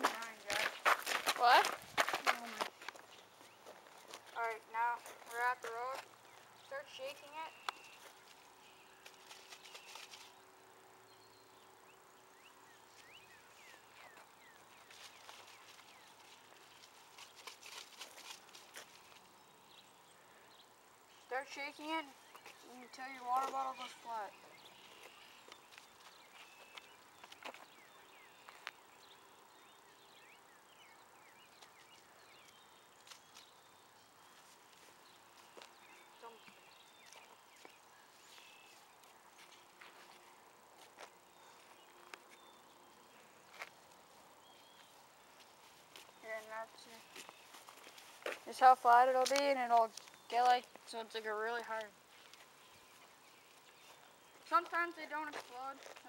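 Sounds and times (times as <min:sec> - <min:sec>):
faint bird chirps: 0:06.2 - 0:10.4, 0:18.9 - 0:34.5.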